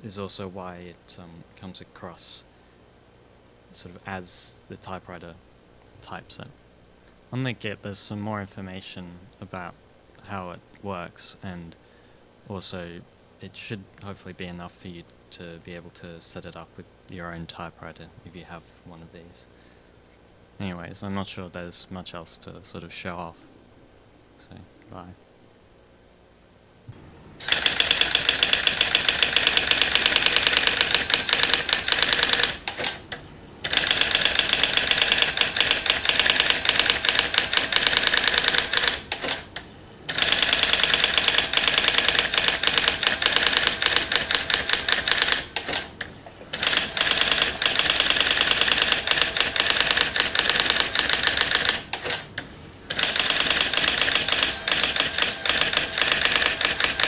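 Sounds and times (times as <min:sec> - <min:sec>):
electronic typewriter printing: 0:27.4 - 0:57.0.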